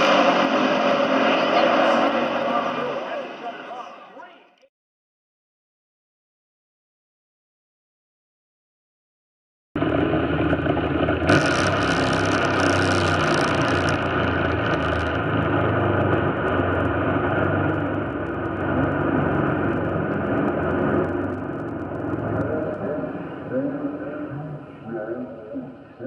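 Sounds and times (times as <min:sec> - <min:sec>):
dragster engine running loud: 0:00.0 - 0:03.9, 0:09.8 - 0:26.0.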